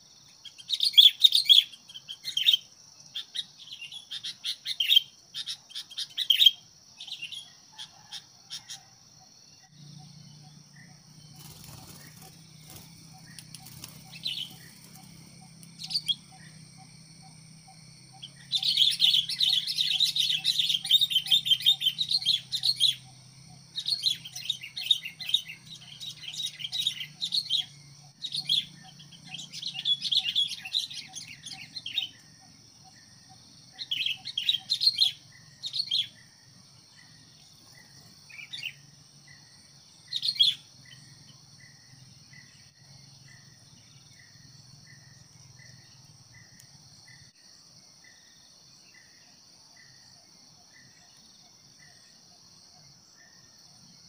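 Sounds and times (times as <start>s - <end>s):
steady insect hiss: 0.0s - 54.0s
faint regular chirp: 9.6s - 36.2s.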